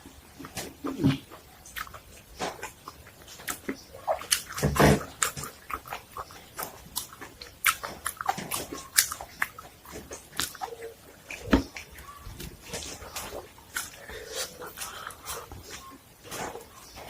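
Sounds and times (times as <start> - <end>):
crunching and chewing: 0.0 - 17.0
wet mouth clicks: 0.5 - 12.1, 13.1 - 15.9.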